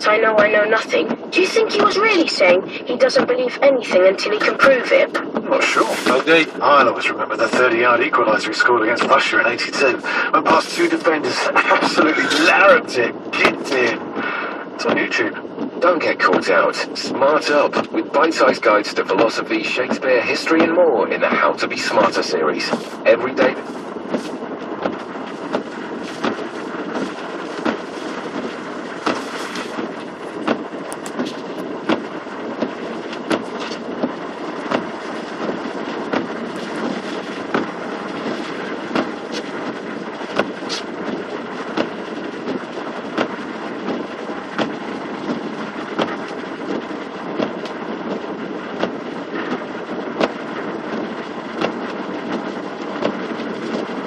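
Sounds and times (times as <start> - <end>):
water and tyres rushing: 0.0 - 54.0
knocks and slaps of water: 13.4 - 18.0, 19.1 - 54.0.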